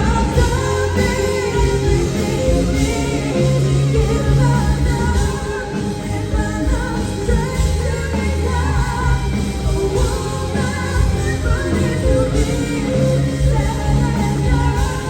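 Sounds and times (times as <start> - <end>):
hard rock band playing: 0.0 - 15.0.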